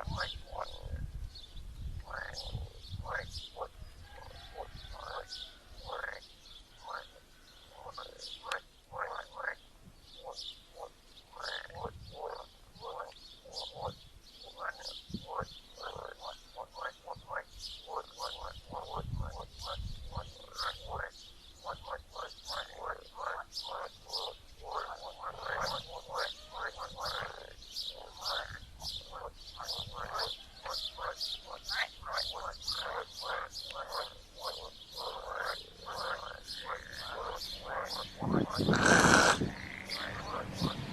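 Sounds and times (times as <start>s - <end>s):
frogs croaking: 0.0s - 1.0s, 2.0s - 40.9s
high short chirping calls: 38.2s - 40.1s.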